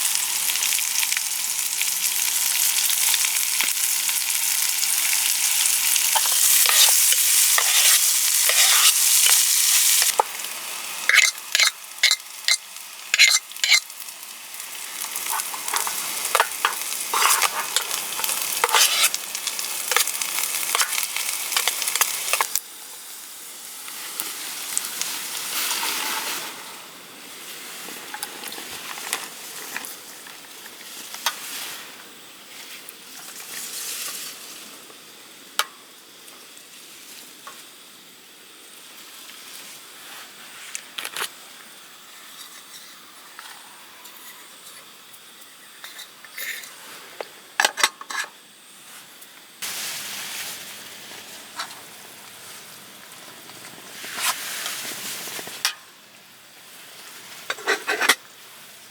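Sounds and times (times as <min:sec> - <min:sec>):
food sizzling in a pan: 0:00.0 - 0:58.9.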